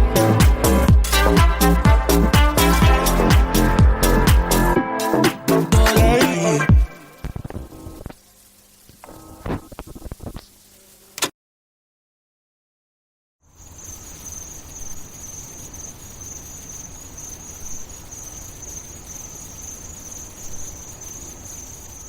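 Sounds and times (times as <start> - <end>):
high insect chirring: 5.8 - 11.2, 13.5 - 22.0.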